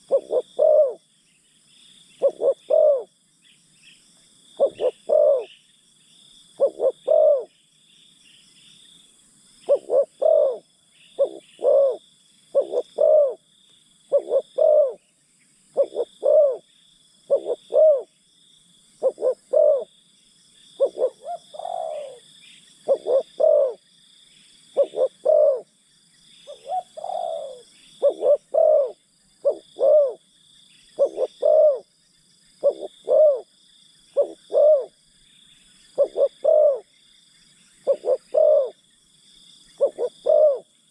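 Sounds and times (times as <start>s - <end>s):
dove cooing: 0.0s - 1.1s, 2.2s - 3.1s, 4.6s - 5.6s, 6.6s - 7.5s, 9.6s - 13.5s, 14.1s - 15.1s, 15.7s - 16.7s, 17.3s - 18.2s, 19.0s - 19.9s, 20.8s - 23.8s, 24.7s - 25.7s, 26.4s - 30.2s, 30.9s - 31.9s, 32.6s - 33.5s, 34.1s - 35.0s, 36.0s - 36.9s, 37.8s - 38.8s, 39.8s - 40.7s
high insect buzz: 0.0s - 40.9s.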